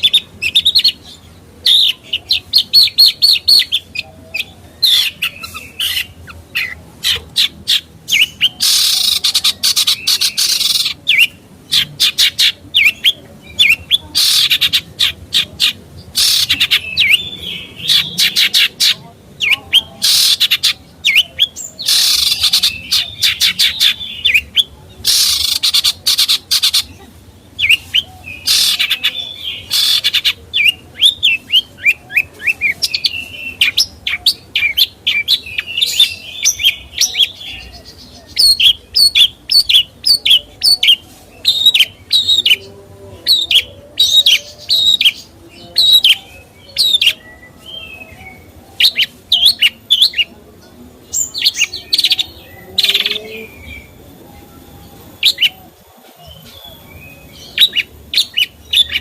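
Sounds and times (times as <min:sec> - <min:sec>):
songbird singing: 0:00.0 - 0:59.0.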